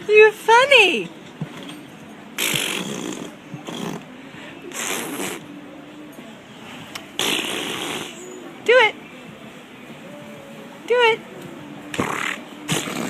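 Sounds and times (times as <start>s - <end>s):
animal hissing raspily: 2.4s - 4.1s, 4.7s - 5.4s, 7.2s - 8.2s, 11.9s - 13.0s.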